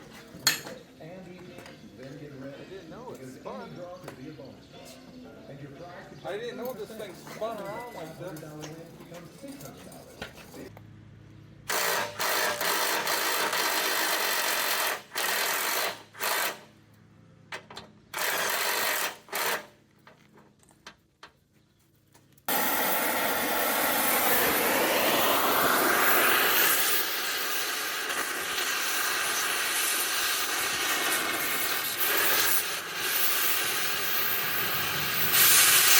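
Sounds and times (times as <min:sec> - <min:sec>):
power tool whirring: 0:11.7 - 0:16.7, 0:18.1 - 0:19.8, 0:22.5 - 0:35.9.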